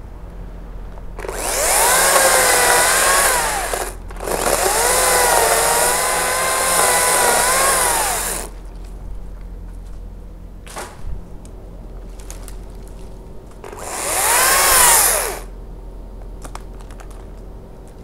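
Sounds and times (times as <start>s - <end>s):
electric chainsaw motor whine: 1.2s - 8.5s, 13.6s - 15.5s.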